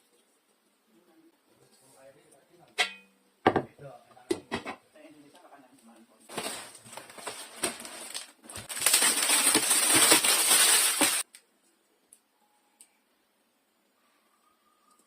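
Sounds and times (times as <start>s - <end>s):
packaging rustling: 6.3s - 11.3s.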